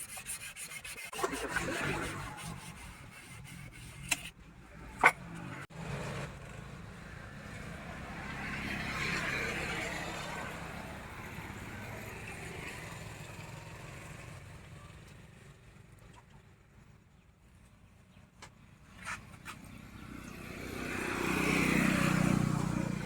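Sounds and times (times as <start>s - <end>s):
vehicle passing by: 5.2s - 14.5s, 19.8s - 23.0s.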